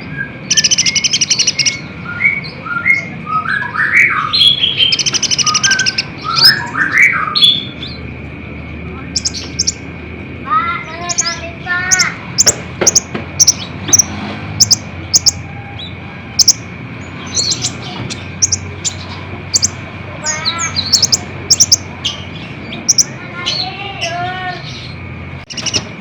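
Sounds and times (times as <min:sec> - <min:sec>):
bird chirping and trilling: 0:00.0 - 0:08.3, 0:09.1 - 0:26.0.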